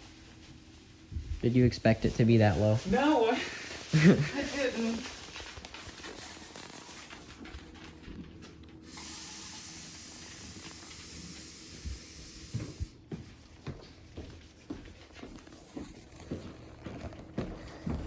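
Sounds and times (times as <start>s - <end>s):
steady hiss: 8.9s - 13.0s.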